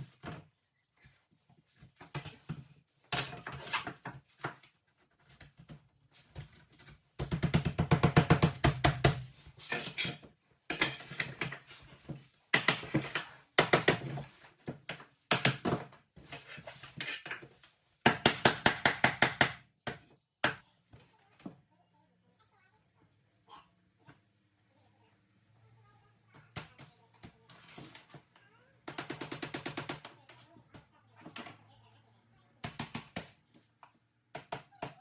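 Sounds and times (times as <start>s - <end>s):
flooring planks being tapped: 11.3s - 16.0s.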